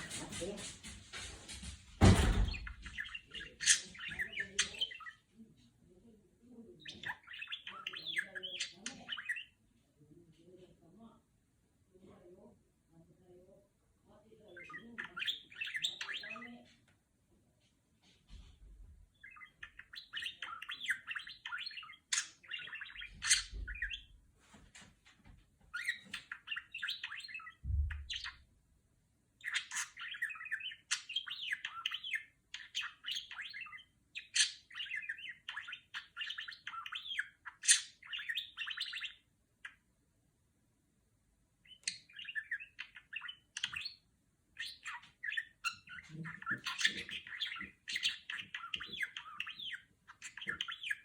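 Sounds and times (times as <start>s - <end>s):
budgerigar chattering: 44.6s - 51.0s.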